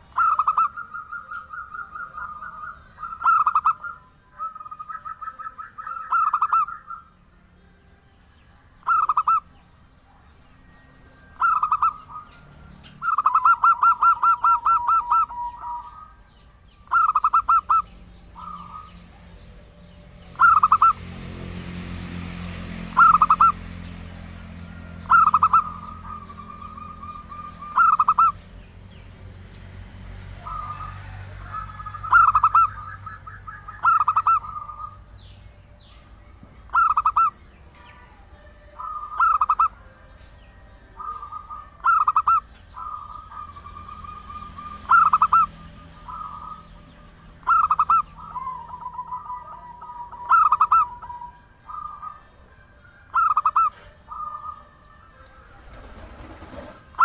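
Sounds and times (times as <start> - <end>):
zebra dove cooing: 0.0 - 7.0, 11.4 - 12.4, 13.0 - 16.2, 16.9 - 19.0, 20.4 - 21.0, 25.0 - 28.4, 30.4 - 34.9, 37.9 - 39.9, 41.0 - 46.8, 47.4 - 52.4, 53.1 - 57.0
faint rushing noise: 54.8 - 57.0.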